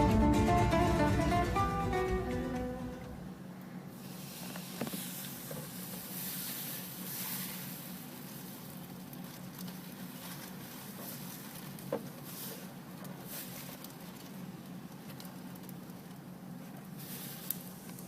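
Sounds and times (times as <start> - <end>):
low hum: 0.0 - 4.0
soft pattering hiss: 2.6 - 18.0.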